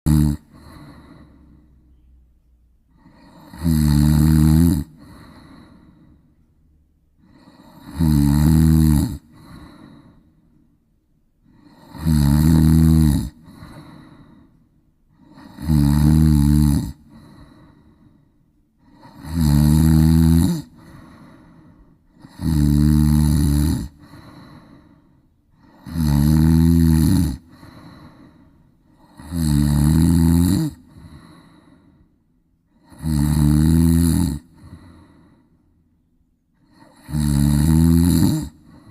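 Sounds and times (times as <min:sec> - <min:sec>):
loud rattling snoring: 0:00.1 - 0:01.4, 0:03.0 - 0:05.8, 0:07.2 - 0:10.0, 0:11.5 - 0:14.2, 0:15.2 - 0:17.6, 0:18.8 - 0:21.4, 0:22.2 - 0:24.6, 0:25.6 - 0:28.2, 0:28.9 - 0:31.5, 0:32.8 - 0:35.1, 0:36.7 - 0:38.9.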